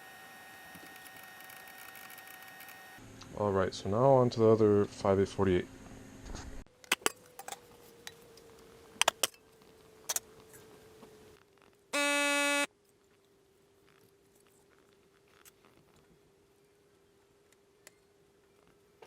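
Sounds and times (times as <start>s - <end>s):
loud electronic beep: 12.0s - 12.7s.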